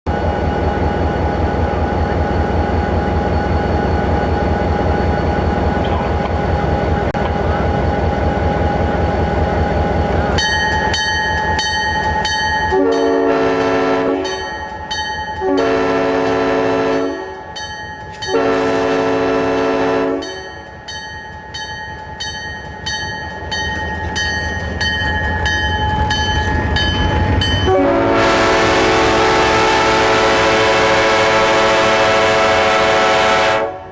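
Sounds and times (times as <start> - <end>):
diesel locomotive rumbling: 0.1 - 33.9
rhythmic ringing bell: 10.4 - 13.2, 14.2 - 15.4, 17.6 - 18.3, 20.2 - 27.7
train air horn blasts: 12.7 - 14.4, 15.4 - 17.5, 18.3 - 20.4, 27.6 - 33.9.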